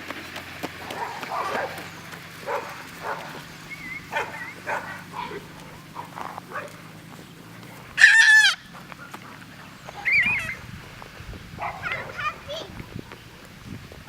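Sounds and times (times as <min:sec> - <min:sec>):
puppy yelping: 0:00.8 - 0:06.9, 0:07.9 - 0:09.3, 0:09.9 - 0:10.6, 0:11.6 - 0:13.2
puppies whimpering: 0:00.9 - 0:13.5.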